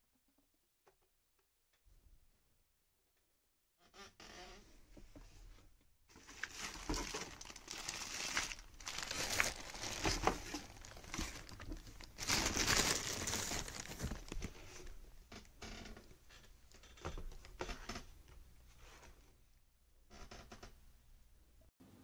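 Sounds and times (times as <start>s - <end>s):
packaging crinkling and rustling: 6.1s - 15.0s.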